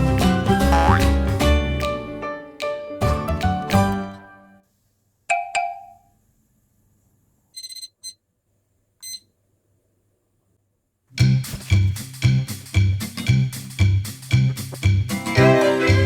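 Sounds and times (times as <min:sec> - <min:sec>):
background music: 0:00.0 - 0:04.6, 0:11.3 - 0:16.0
high electronic beeps: 0:07.6 - 0:08.2.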